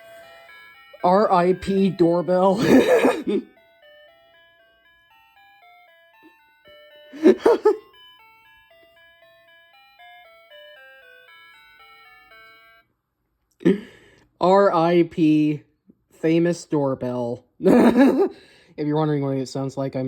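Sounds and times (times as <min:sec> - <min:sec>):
electronic doorbell tune: 0:00.0 - 0:12.9.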